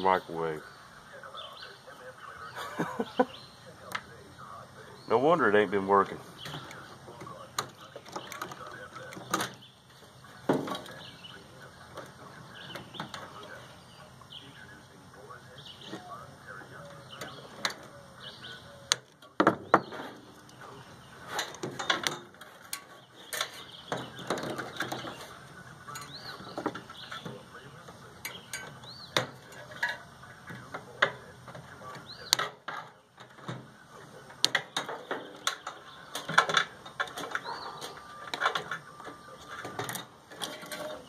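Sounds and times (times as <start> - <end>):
metal clicks and clanks: 21.3 - 25.3, 28.2 - 33.7, 34.3 - 41.0
metal scraping: 34.7 - 41.0.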